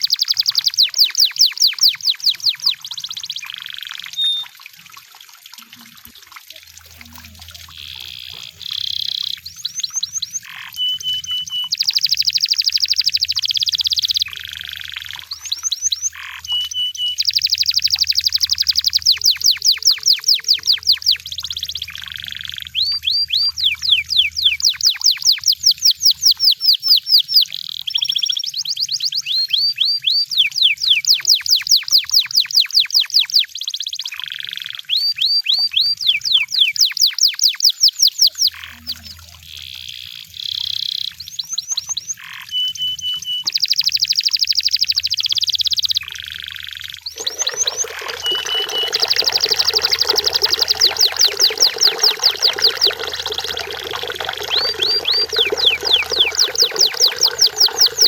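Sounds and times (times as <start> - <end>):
canary singing trills: 0.0 - 4.6, 6.6 - 58.0
canary clear whistle: 4.1 - 4.5, 8.0 - 14.3, 47.1 - 58.0.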